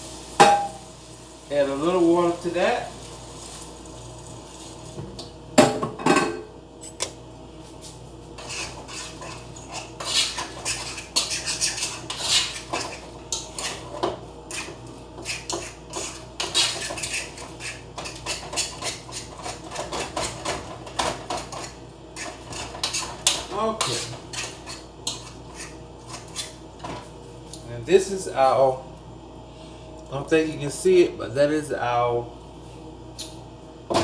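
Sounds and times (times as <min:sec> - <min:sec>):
utensil scraping a frying pan: 0:08.4 - 0:26.6.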